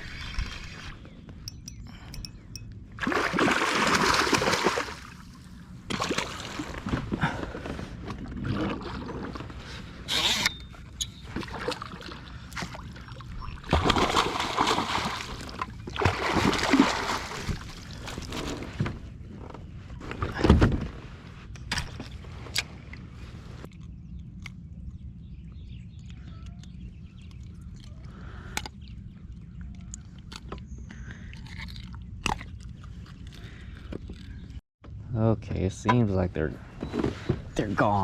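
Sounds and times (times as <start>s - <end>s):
water splashing: 3.0s - 6.8s, 11.2s - 18.3s.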